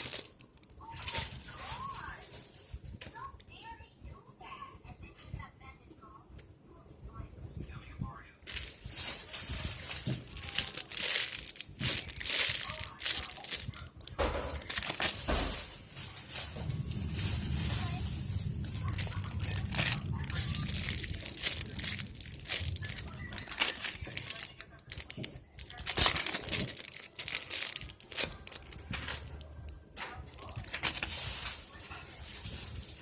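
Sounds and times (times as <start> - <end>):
materials crinkling and rustling: 0.0 - 3.2, 8.4 - 33.0
sharp crackles: 8.5 - 33.0.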